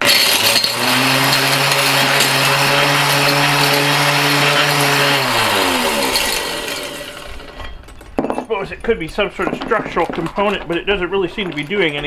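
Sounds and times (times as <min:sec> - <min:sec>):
ore crusher motor hum and grinding: 0:00.0 - 0:12.0.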